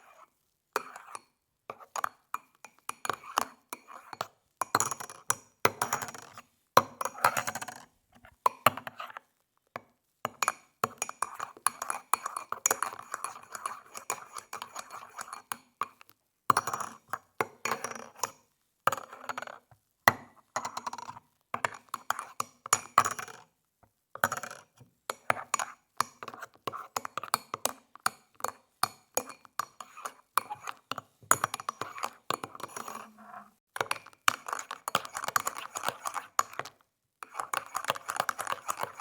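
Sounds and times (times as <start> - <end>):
spoon stirring in ceramic mug: 0.8 - 7.6, 10.3 - 16.0, 21.6 - 23.3, 24.2 - 39.0.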